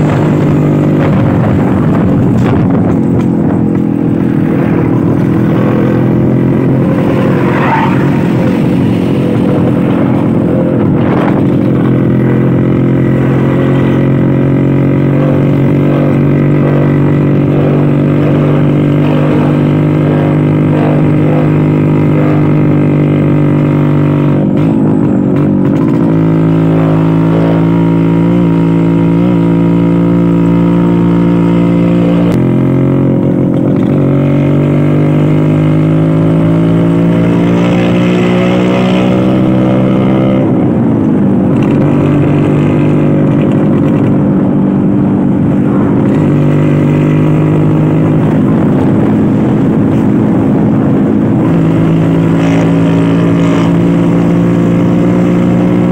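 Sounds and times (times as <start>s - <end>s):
two-stroke scooter engine running: 8.5s - 36.6s.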